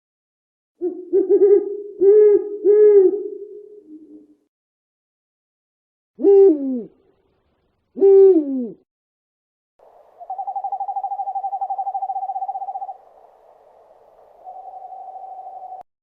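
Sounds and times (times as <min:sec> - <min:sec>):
owl hoot: 0:00.8 - 0:04.4, 0:06.2 - 0:07.0, 0:08.0 - 0:08.8, 0:10.2 - 0:15.8
owl trill: 0:09.8 - 0:15.9
faint hiss: 0:12.5 - 0:15.8.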